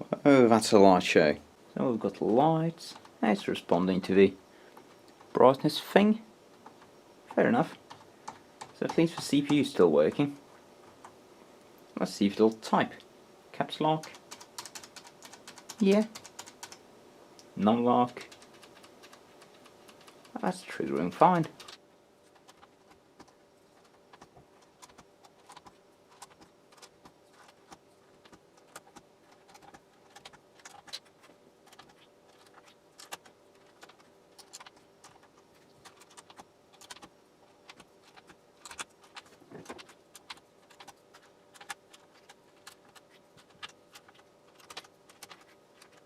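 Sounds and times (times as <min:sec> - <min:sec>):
keyboard keys clicking: 0:14.0 - 0:16.8, 0:22.4 - 0:31.1, 0:31.7 - 0:46.0.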